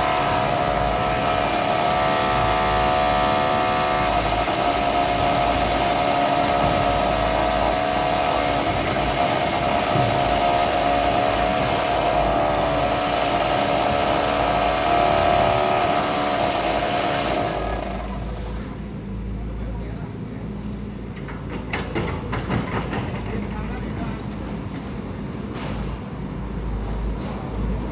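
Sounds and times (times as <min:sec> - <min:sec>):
construction machine engine whining: 0:00.0 - 0:18.9.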